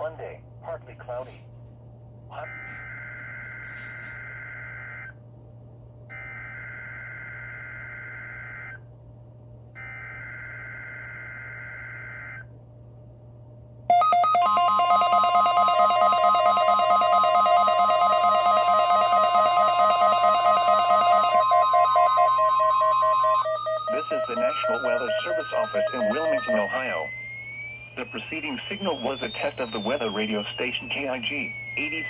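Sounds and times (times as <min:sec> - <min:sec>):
steady alarm tone: 0:02.4 - 0:05.2, 0:06.1 - 0:08.8, 0:09.8 - 0:12.5, 0:13.9 - 0:32.0
warbling electronic alarm tone: 0:02.4 - 0:05.2, 0:06.1 - 0:08.8, 0:09.8 - 0:12.5, 0:13.9 - 0:32.0
buzzy digital data bursts: 0:17.3 - 0:32.0.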